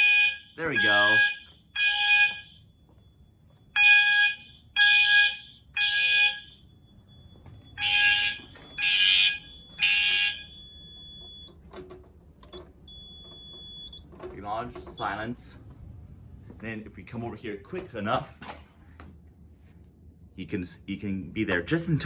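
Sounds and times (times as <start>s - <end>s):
fire alarm horn blasts: 0.0s - 11.5s.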